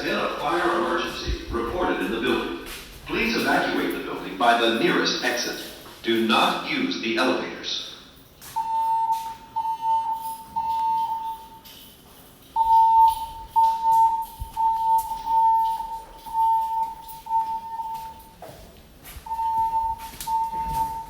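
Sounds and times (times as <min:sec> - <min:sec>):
pulsing high alarm tone: 0:08.6 - 0:11.9, 0:12.5 - 0:18.4, 0:19.3 - 0:21.0.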